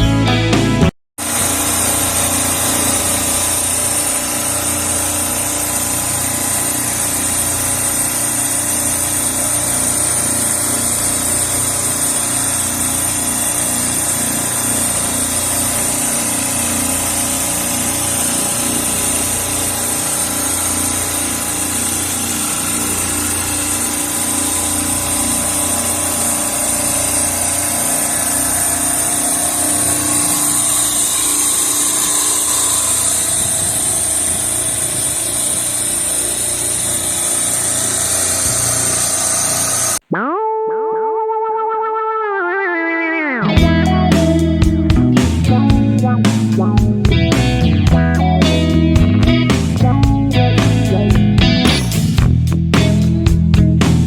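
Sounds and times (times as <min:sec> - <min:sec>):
machine motor whining and humming: 0:01.2 - 0:40.0.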